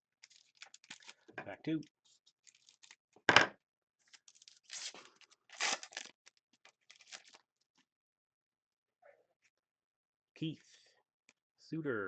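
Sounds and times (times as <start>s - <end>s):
cards rustling: 0.2s - 1.3s.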